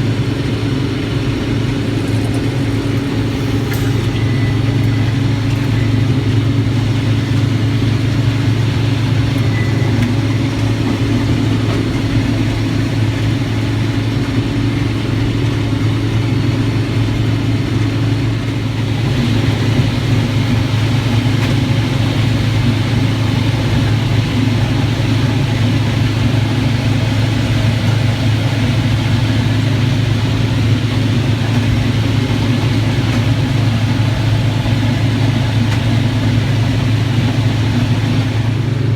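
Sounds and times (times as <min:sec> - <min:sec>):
farm machinery engine running: 0:00.0 - 0:38.9
rushing hissing noise: 0:01.6 - 0:07.2.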